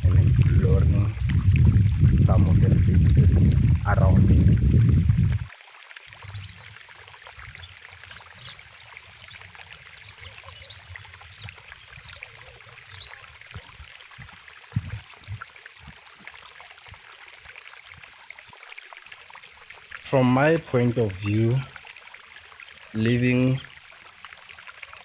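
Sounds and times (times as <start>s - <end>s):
low thumps: 0.0s - 5.5s, 14.2s - 15.4s
stream trickling: 0.0s - 25.0s.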